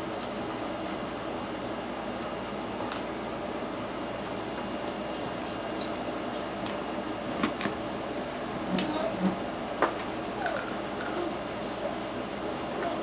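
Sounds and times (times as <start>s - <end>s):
air conditioner hum: 0.0s - 13.0s.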